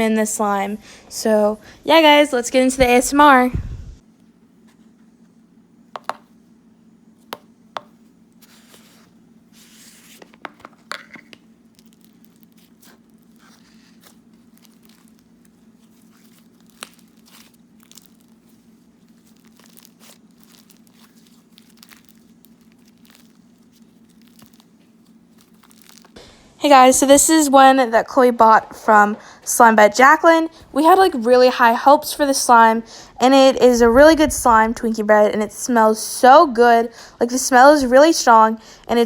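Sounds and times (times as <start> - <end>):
faint steady hum: 0.0 - 39.0
slime squeezed by hand: 11.8 - 26.2.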